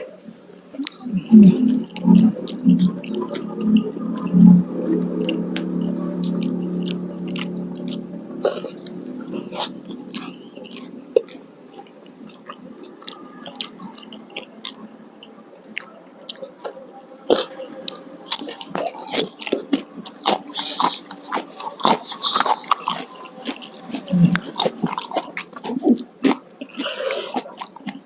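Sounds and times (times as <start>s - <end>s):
chewing with mouth clicks: 10.1s - 14.8s, 15.7s - 28.0s.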